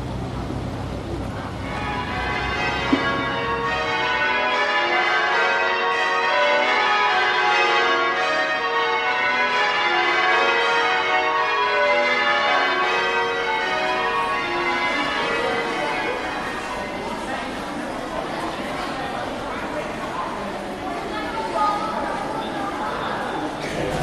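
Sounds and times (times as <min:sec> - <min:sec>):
church bells ringing: 0:01.5 - 0:19.1.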